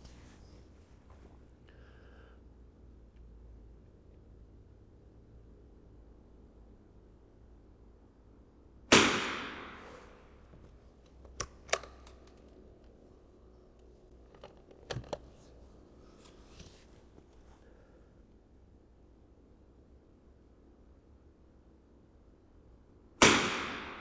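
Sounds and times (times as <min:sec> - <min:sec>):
rifle shot: 0:08.9 - 0:10.2, 0:23.2 - 0:24.0
sharp metallic clicks: 0:11.0 - 0:12.6.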